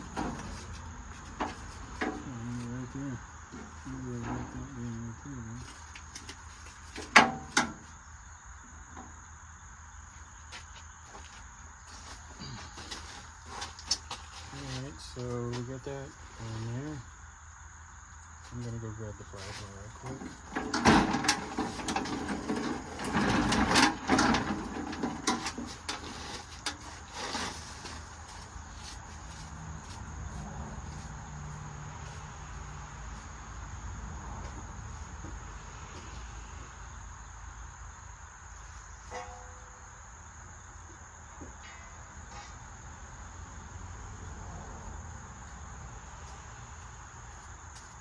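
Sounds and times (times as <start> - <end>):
crickets chirring: 0.0 - 48.0
metal clangs: 7.0 - 7.9, 20.0 - 26.8, 39.1 - 39.7.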